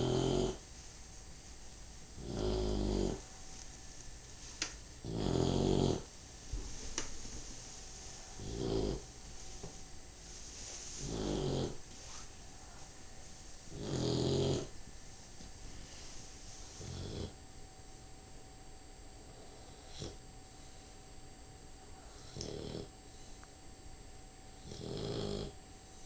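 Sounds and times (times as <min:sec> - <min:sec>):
pet snoring: 0:00.0 - 0:00.6, 0:02.2 - 0:03.2, 0:05.0 - 0:06.1, 0:08.4 - 0:09.1, 0:11.0 - 0:11.8, 0:13.7 - 0:14.7, 0:16.7 - 0:17.4, 0:19.4 - 0:20.2, 0:22.1 - 0:22.9, 0:24.6 - 0:25.6.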